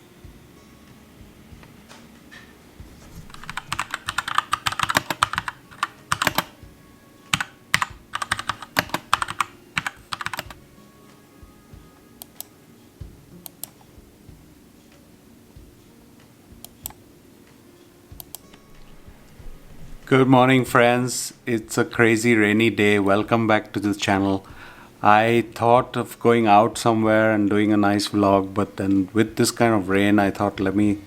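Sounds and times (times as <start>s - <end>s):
mechanical keyboard typing: 3.2s - 6.6s, 7.3s - 10.6s.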